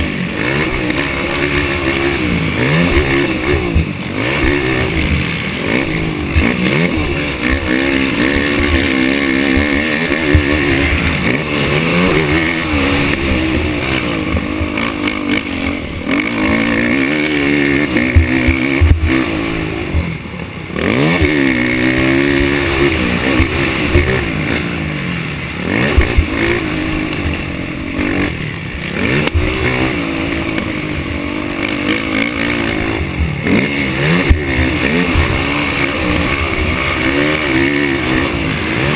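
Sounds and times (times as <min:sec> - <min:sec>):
atv engine revving: 0:00.0 - 0:38.9
low thumps: 0:18.1 - 0:19.4.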